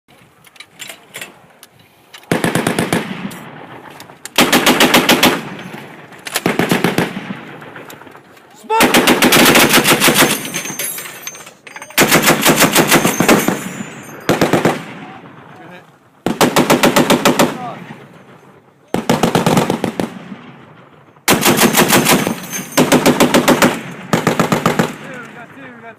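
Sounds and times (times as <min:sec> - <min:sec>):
machine gun firing bursts: 0:02.3 - 0:03.3, 0:04.4 - 0:05.6, 0:06.4 - 0:07.7, 0:08.8 - 0:10.6, 0:12.0 - 0:15.0, 0:16.2 - 0:17.7, 0:18.9 - 0:20.2, 0:21.3 - 0:25.1.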